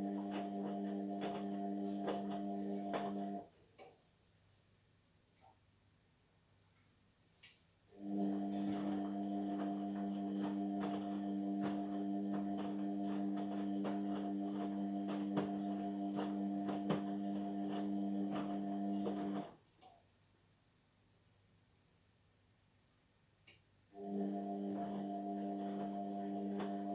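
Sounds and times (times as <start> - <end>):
washing machine humming: 0.0 - 3.5, 7.9 - 19.5, 24.0 - 26.9.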